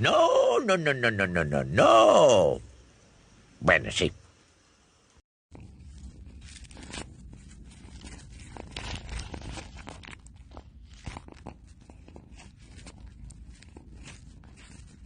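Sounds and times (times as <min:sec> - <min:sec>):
cat crunching dry food: 0:05.6 - 0:15.0.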